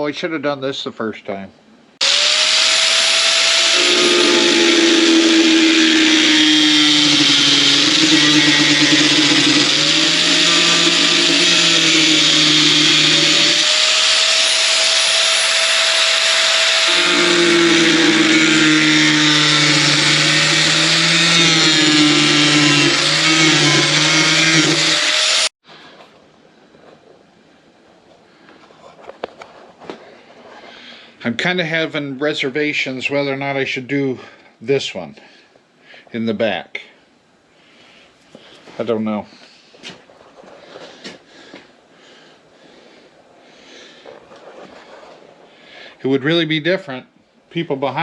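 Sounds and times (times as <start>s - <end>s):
power tool motor whining: 2.0s - 25.5s.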